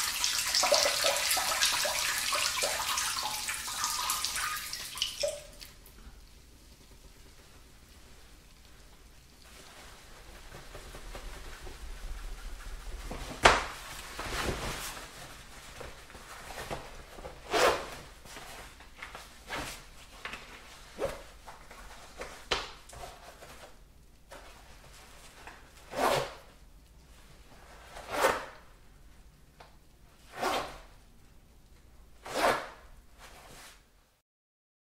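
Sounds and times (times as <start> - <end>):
urine stream in toilet: 0.0 - 13.0.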